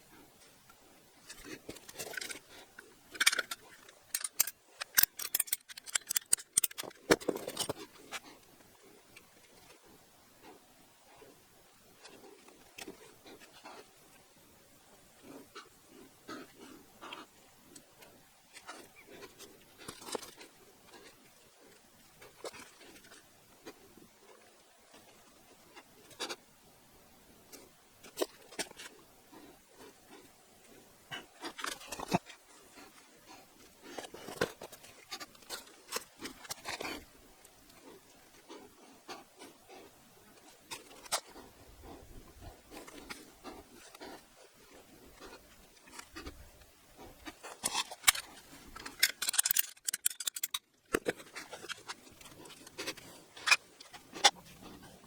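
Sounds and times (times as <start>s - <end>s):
plastic pipe fittings clicking: 3.1s - 7.8s, 47.5s - 54.4s.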